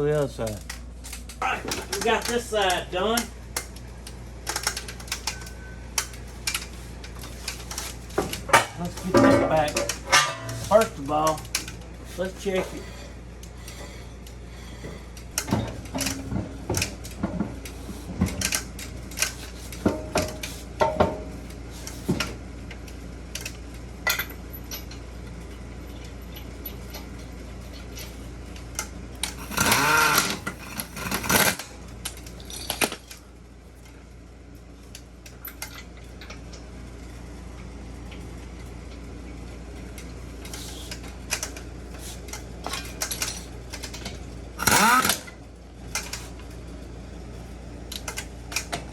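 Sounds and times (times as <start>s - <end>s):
metal tools clinking and knocking: 7.2s - 13.1s, 29.2s - 33.2s, 42.3s - 45.3s.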